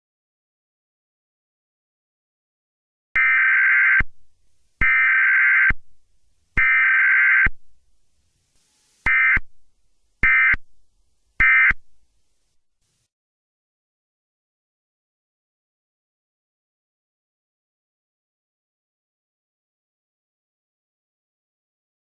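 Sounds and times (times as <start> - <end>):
buzzing digital data bursts: 8.7 - 9.5.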